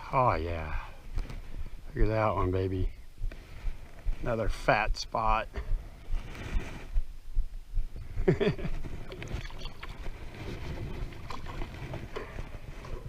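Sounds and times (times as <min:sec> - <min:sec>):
low steady rumble: 0:00.0 - 0:09.1.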